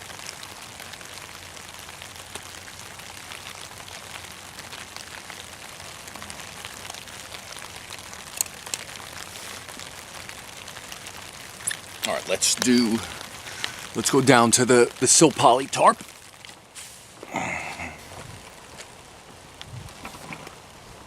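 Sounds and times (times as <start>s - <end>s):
light rain on a tarp: 0.0s - 21.0s
sharp loud raindrops: 0.0s - 21.0s.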